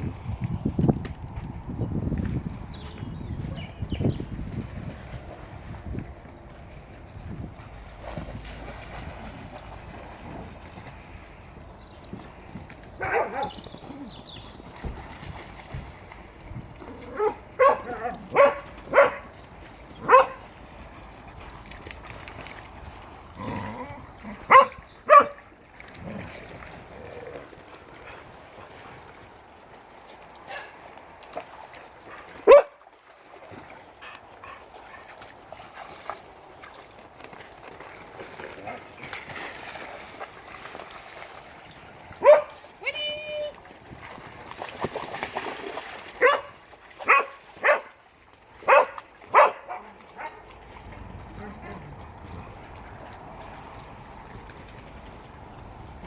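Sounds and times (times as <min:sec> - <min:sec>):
dogs barking: 0:13.0 - 0:13.6, 0:17.1 - 0:19.4, 0:20.0 - 0:20.4, 0:24.3 - 0:25.4, 0:32.4 - 0:32.8, 0:42.2 - 0:42.6, 0:46.2 - 0:48.0, 0:48.6 - 0:50.4.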